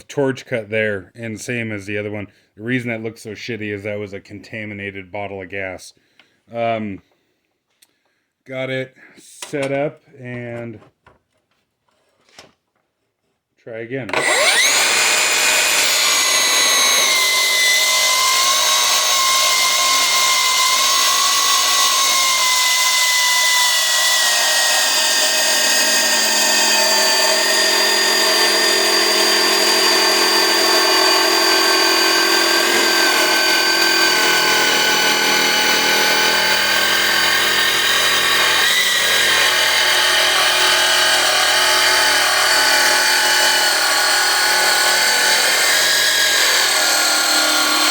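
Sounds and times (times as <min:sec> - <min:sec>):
circular saw cutting steel: 0:14.1 - 0:47.9.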